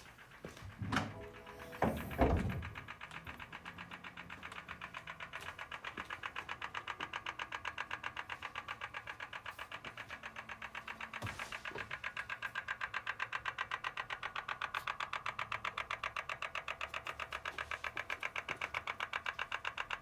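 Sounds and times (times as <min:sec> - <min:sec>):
engine running with fast ticking: 0:00.0 - 0:20.0
thump: 0:01.8 - 0:02.6.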